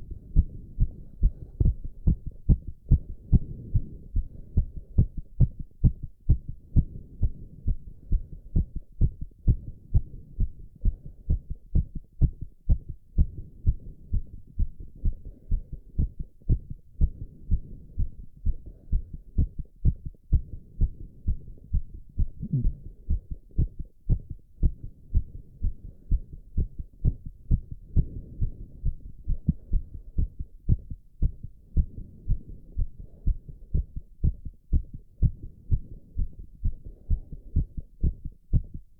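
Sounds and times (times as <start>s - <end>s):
heart beating fast: 0.0s - 38.9s.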